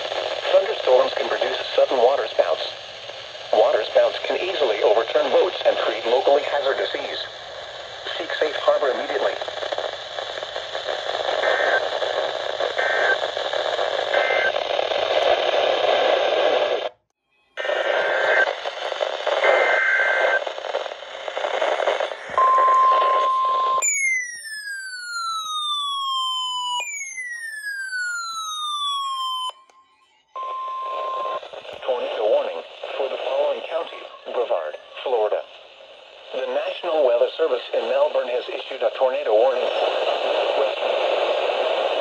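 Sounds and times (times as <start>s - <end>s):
radio static: 0.0s - 17.0s, 17.6s - 23.8s, 30.4s - 42.0s
falling siren-like tones: 23.8s - 31.4s.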